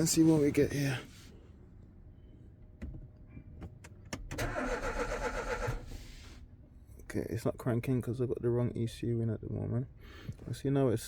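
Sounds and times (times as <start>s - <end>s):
starter whir: 4.4s - 5.9s.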